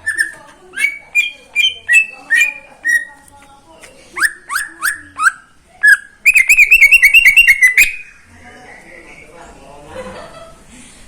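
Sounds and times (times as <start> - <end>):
bird singing whistled notes: 0.0 - 3.2, 4.2 - 8.2.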